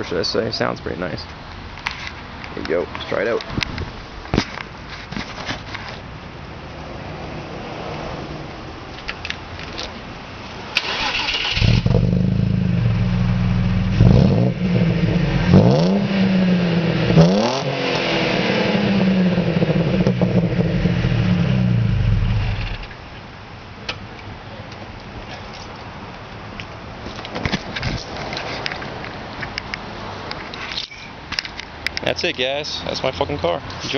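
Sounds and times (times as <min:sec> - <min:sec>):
car engine starting and idling: 0:10.6 - 0:23.1
engine revving: 0:10.8 - 0:22.9.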